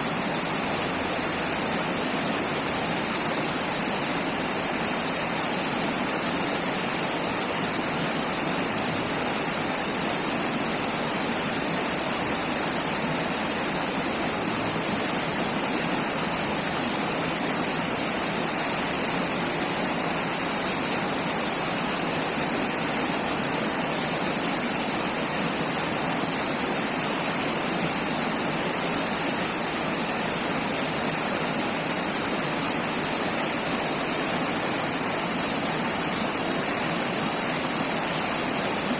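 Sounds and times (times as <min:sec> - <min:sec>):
river water rushing: 0:00.0 - 0:38.9.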